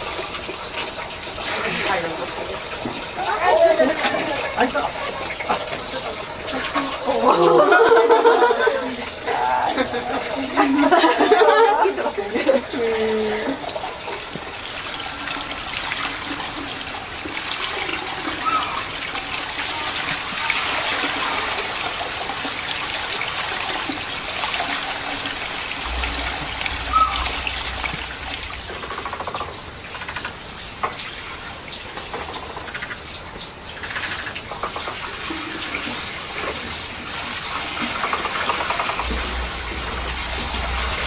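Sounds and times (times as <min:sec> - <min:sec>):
water trickling and splashing: 0:00.0 - 0:41.0
low hum: 0:25.5 - 0:30.0, 0:38.7 - 0:41.0.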